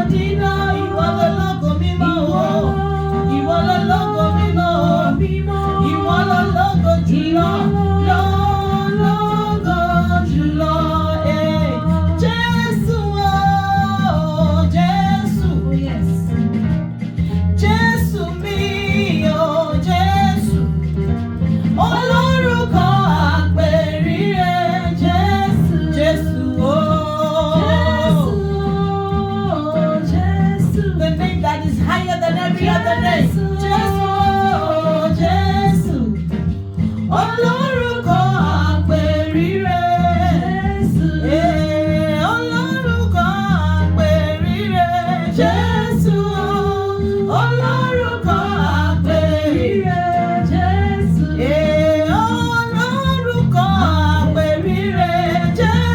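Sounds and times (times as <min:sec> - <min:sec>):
person singing: 0:00.0 - 0:16.3, 0:21.8 - 0:55.9
instrumental backing with bass: 0:00.0 - 0:55.9.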